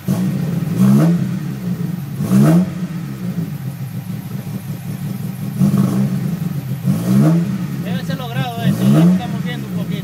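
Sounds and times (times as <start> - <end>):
car engine idling roughly: 2.9 - 10.0.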